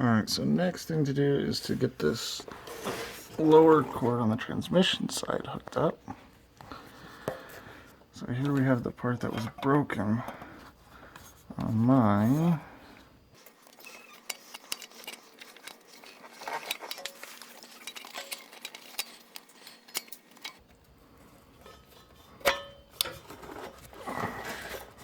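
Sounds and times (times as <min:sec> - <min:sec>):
small hard parts clicking: 0:13.4 - 0:20.9.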